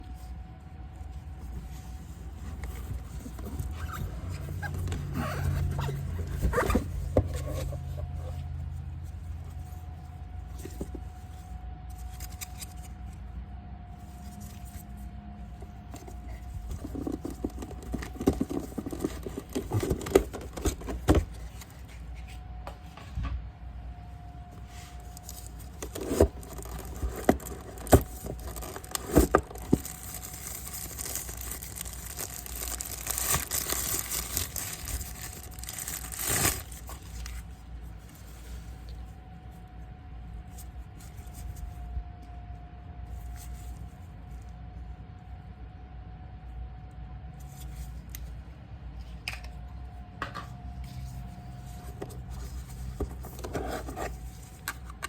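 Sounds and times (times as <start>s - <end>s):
faint steady hum: 0.0s - 55.0s
packaging crinkling and tearing: 25.0s - 37.5s.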